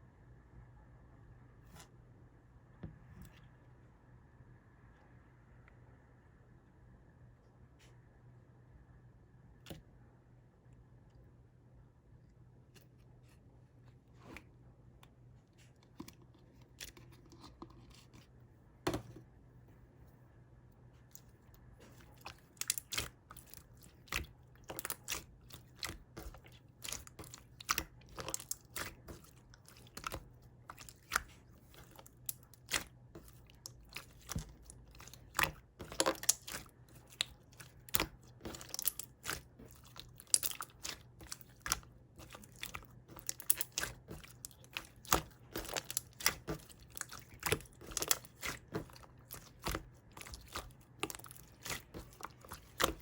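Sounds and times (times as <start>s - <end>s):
honeycomb being chewed crunching: 21.1s - 53.0s.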